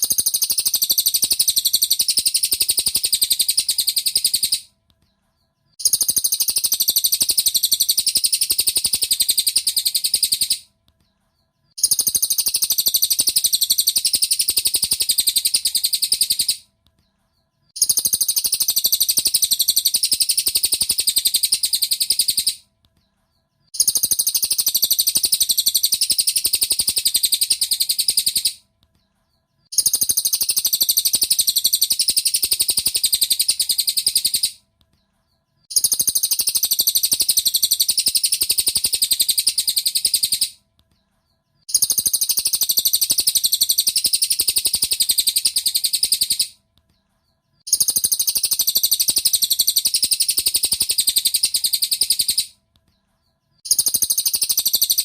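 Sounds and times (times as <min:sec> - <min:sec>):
rapid high bird chirping: 0:00.0 - 0:55.0.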